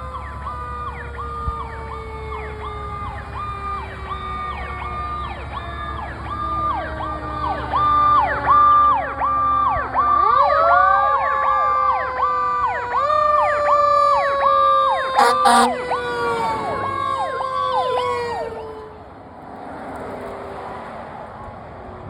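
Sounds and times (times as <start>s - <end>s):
electronic siren sweeping rapidly: 15.2s - 15.8s.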